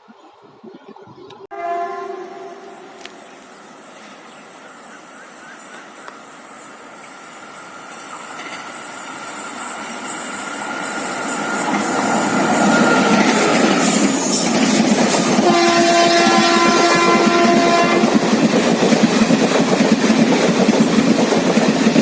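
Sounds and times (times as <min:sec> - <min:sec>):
locomotive horn blast: 0:01.5 - 0:03.2, 0:15.4 - 0:18.2
passenger train rolling: 0:01.5 - 0:22.0.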